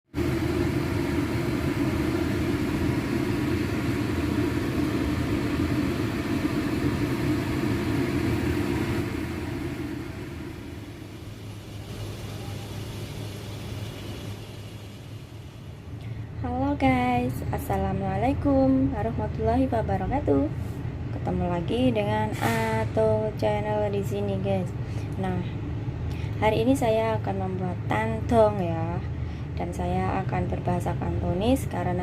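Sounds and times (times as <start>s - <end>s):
low mechanical rumble: 0.0s - 32.0s.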